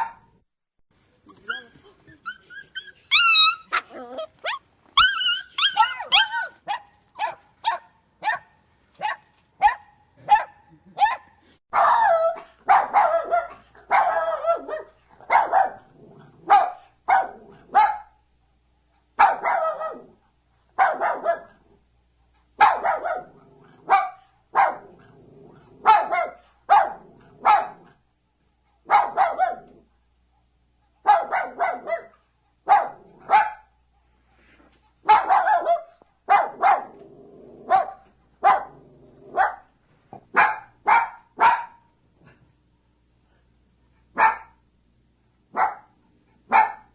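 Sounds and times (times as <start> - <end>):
dog barking: 0.0 - 0.3, 5.7 - 18.2, 19.2 - 20.1, 20.8 - 21.6, 22.6 - 24.9, 25.8 - 27.9, 28.8 - 29.7, 31.0 - 33.7, 35.0 - 37.0, 37.6 - 39.7, 40.3 - 41.9, 44.1 - 44.6, 45.5 - 46.9.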